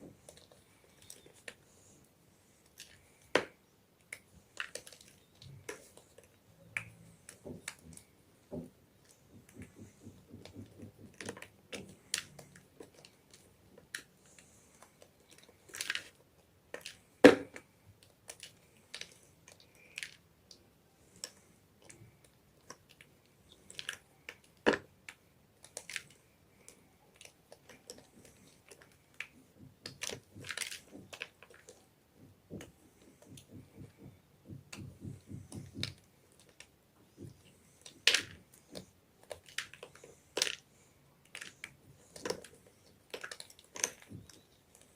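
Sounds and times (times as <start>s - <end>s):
chalk being crushed and crumbled: 35.5s - 40.6s.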